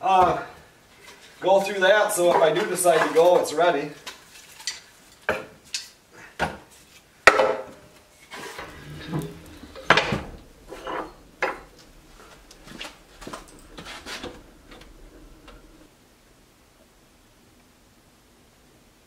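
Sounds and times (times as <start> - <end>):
soft rattling: 8.2 - 15.9
hard objects knocking and clattering: 8.4 - 15.9.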